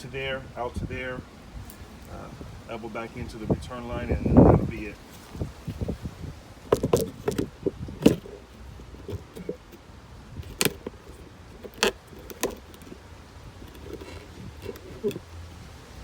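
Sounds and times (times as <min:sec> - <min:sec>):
plastic pipe fittings clicking: 0:06.7 - 0:08.4, 0:09.0 - 0:13.0, 0:13.6 - 0:15.2.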